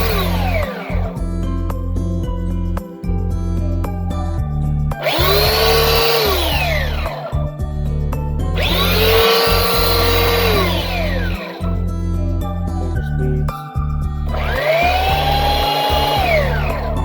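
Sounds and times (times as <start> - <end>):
belt sander motor whine: 0.0 - 1.4, 5.0 - 7.6, 8.6 - 11.9, 14.3 - 17.0
background music: 0.0 - 17.0.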